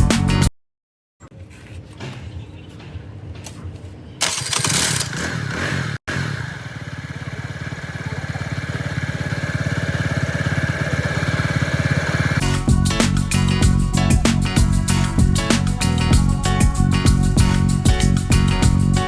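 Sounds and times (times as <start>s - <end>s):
scooter engine starting and idling: 4.2s - 19.0s.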